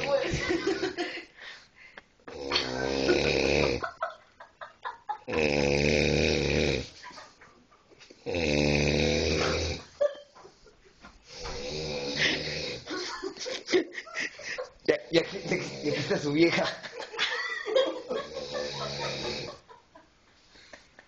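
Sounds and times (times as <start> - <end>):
man snoring loudly: 2.3 - 4.0, 5.3 - 6.9, 8.2 - 9.9, 11.3 - 13.0, 15.3 - 16.2, 18.2 - 19.6.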